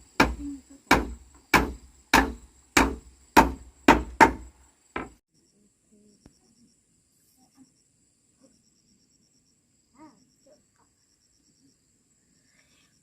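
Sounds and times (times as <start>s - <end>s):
sharp blows striking wood: 0.0s - 5.2s
insects chirping: 0.0s - 13.0s.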